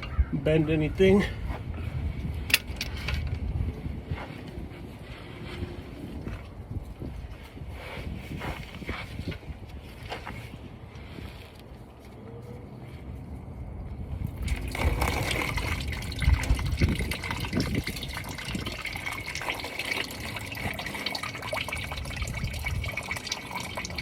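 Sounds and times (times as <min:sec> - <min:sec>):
oil splashing into drain pan: 0:14.4 - 0:24.0.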